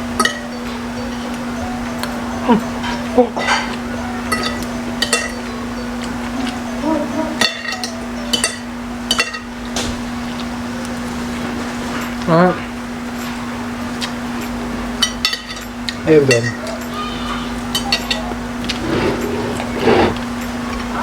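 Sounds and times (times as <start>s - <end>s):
cutlery clinking on dishes: 0.2s - 1.4s, 2.4s - 10.5s, 15.0s - 20.2s.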